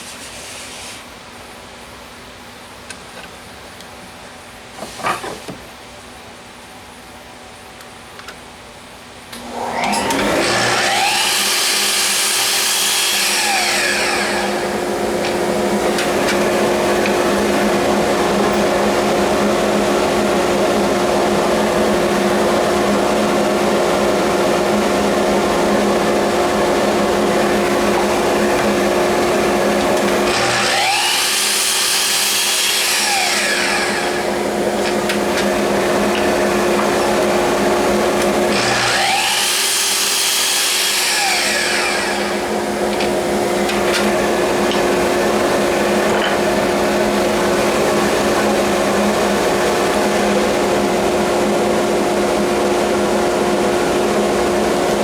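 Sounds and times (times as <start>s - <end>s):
power tool cutting wood: 9.4s - 52.0s
power tool humming: 9.4s - 55.0s.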